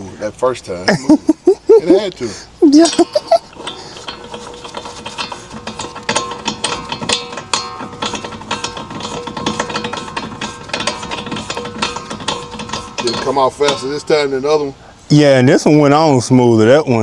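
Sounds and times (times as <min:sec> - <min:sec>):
ratchet wrench clicking: 0:02.8 - 0:14.8.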